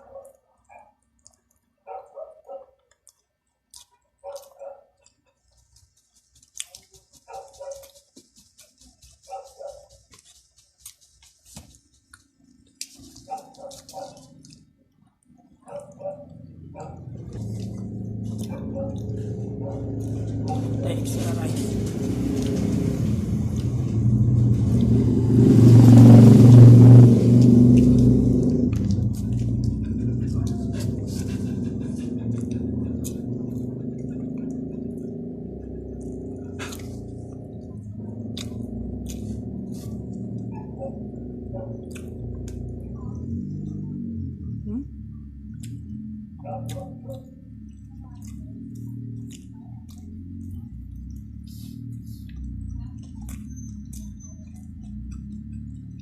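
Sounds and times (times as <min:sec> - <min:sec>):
dog barking: 0:00.0 - 0:01.0, 0:01.8 - 0:02.8, 0:04.2 - 0:05.2, 0:07.2 - 0:08.2, 0:09.2 - 0:10.2, 0:13.2 - 0:14.4, 0:15.6 - 0:17.3, 0:18.4 - 0:21.3, 0:40.4 - 0:42.0, 0:46.4 - 0:47.4
crunchy chewing: 0:00.0 - 0:23.8, 0:27.2 - 0:43.8, 0:45.5 - 0:56.0
vehicle engine passing by: 0:05.5 - 0:11.8, 0:15.7 - 0:56.0.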